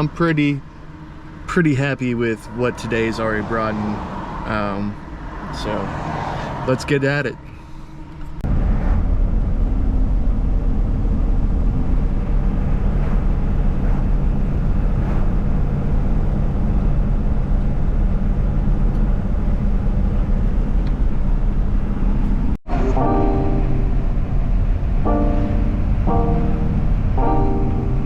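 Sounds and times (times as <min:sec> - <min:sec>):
van engine and road rumble: 0:00.0 - 0:28.0
music: 0:22.7 - 0:24.2, 0:25.1 - 0:28.0.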